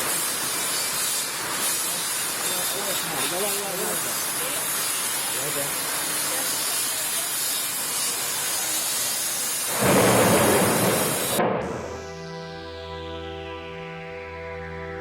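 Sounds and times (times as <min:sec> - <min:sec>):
heavy rain hissing: 0:00.0 - 0:12.7
deep rumbling surge: 0:09.7 - 0:12.6
background music with held tones: 0:11.9 - 0:15.0.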